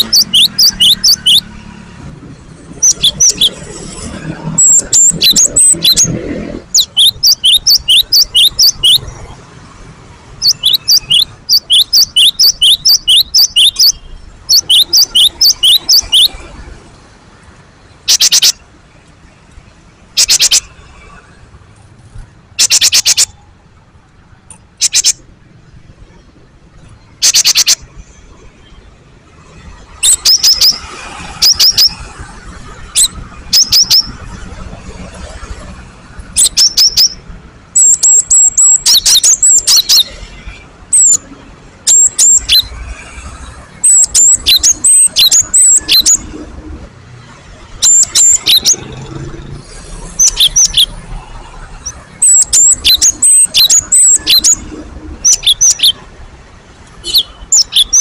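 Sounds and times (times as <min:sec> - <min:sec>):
bird chirping: 0:00.0 - 0:01.6, 0:02.6 - 0:09.4, 0:10.3 - 0:16.7, 0:17.9 - 0:18.7, 0:20.1 - 0:21.1, 0:22.6 - 0:23.4, 0:24.5 - 0:25.2, 0:26.8 - 0:27.9, 0:29.5 - 0:35.5, 0:36.1 - 0:42.8, 0:43.7 - 0:46.4, 0:47.8 - 0:56.1, 0:57.0 - 0:58.0.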